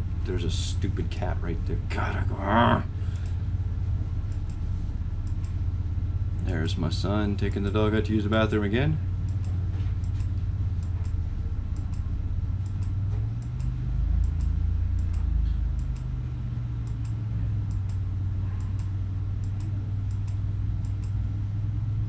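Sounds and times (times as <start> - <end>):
steady low hum: 0.0 - 22.0
light computer clicks: 4.3 - 4.6, 5.2 - 5.6, 9.2 - 18.0, 18.6 - 21.3.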